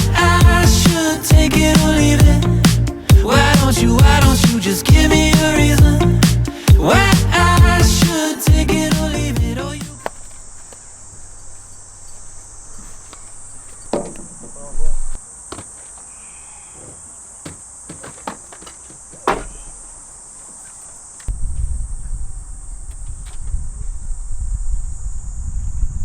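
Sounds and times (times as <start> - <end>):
low rumbling noise: 0.0 - 10.0
insects chirring: 0.0 - 26.0
sharp knocks and clatters: 13.9 - 14.6, 17.4 - 19.6.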